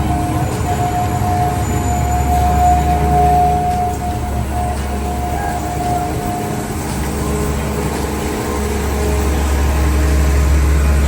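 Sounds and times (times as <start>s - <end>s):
train low rumble: 0.0s - 11.0s.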